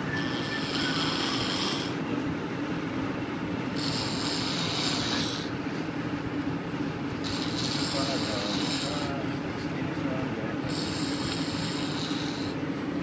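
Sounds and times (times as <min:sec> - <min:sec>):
man snoring: 0:00.0 - 0:02.0, 0:03.8 - 0:05.5, 0:07.2 - 0:09.2, 0:10.7 - 0:12.6.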